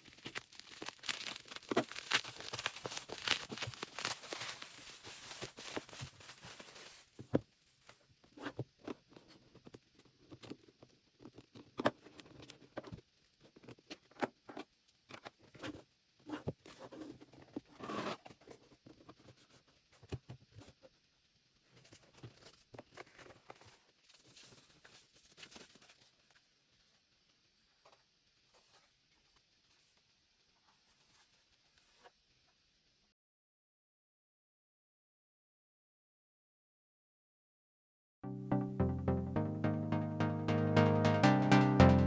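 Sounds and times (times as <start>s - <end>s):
packaging rustling and tearing: 0.0s - 7.2s.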